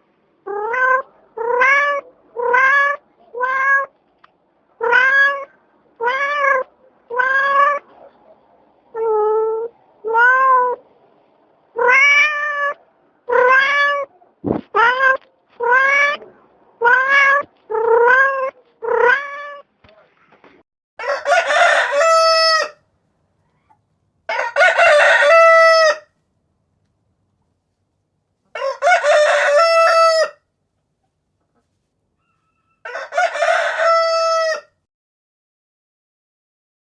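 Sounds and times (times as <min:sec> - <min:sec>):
cat meowing: 0:00.5 - 0:04.0, 0:04.8 - 0:08.0, 0:09.0 - 0:10.8, 0:11.7 - 0:14.1, 0:14.7 - 0:19.7
short low thump: 0:14.4 - 0:14.8
rooster crowing: 0:21.0 - 0:22.8, 0:24.3 - 0:26.1, 0:28.5 - 0:30.4, 0:32.2 - 0:34.8.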